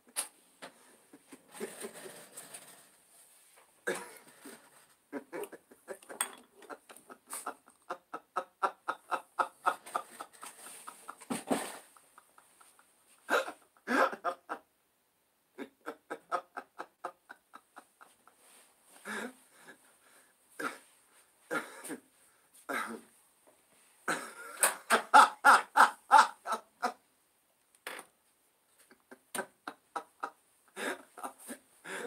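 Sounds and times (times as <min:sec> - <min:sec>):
recorded laughter: 0:00.8 - 0:02.6, 0:03.8 - 0:14.7, 0:15.5 - 0:19.9, 0:24.1 - 0:27.0, 0:28.7 - 0:32.0.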